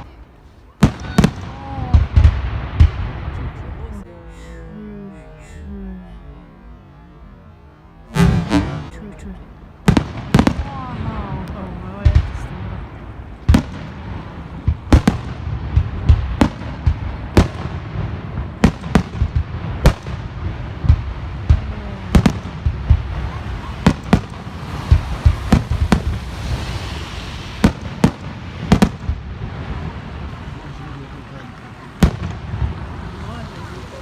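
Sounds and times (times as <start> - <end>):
loud firework bangs: 0.0 - 4.0, 8.1 - 34.0
distant fireworks rumble: 0.0 - 34.0
firework hiss: 12.0 - 34.0.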